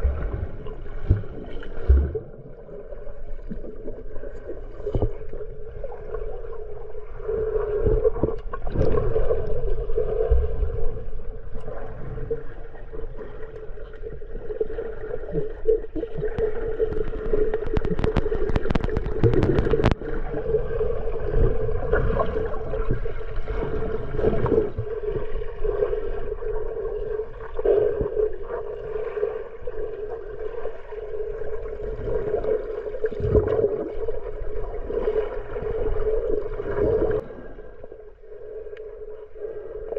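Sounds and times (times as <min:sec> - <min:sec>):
muffled water sloshing and gurgling: 0:00.0 - 0:39.9
crackling clicks: 0:16.2 - 0:20.0.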